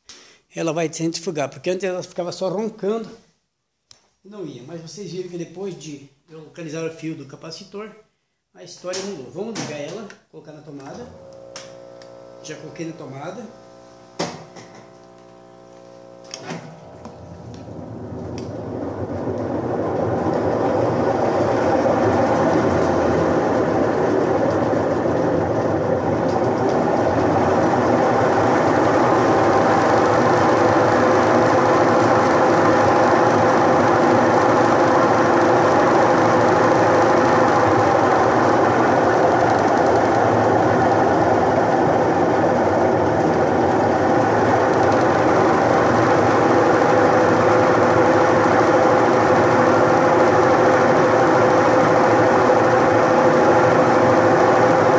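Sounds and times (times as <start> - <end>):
washing machine spinning: 13.6 - 54.9.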